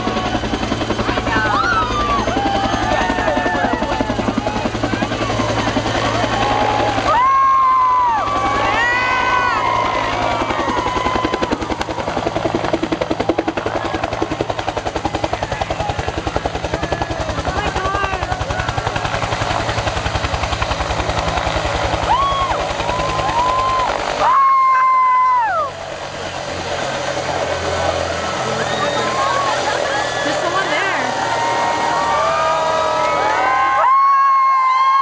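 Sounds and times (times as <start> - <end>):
people cheering and shouting: 0.0 - 20.0, 21.1 - 26.4, 27.3 - 35.0
helicopter rotor beating: 0.0 - 35.0
loud held shout: 22.1 - 25.7, 28.6 - 35.0.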